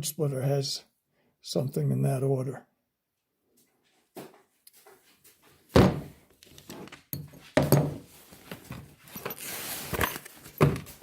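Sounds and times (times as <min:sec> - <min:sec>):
rustling handling noise: 0:06.3 - 0:11.0
steel wrenches thunking and knocking: 0:06.6 - 0:08.0.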